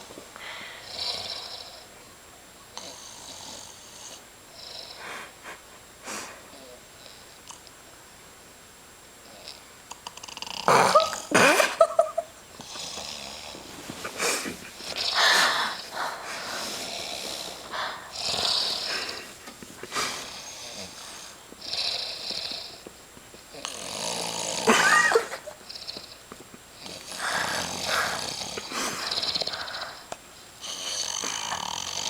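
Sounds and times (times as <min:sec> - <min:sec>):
heavy snoring: 0:00.8 - 0:01.9, 0:02.8 - 0:05.1, 0:09.2 - 0:11.2, 0:12.6 - 0:22.8, 0:23.5 - 0:25.1, 0:26.8 - 0:32.0.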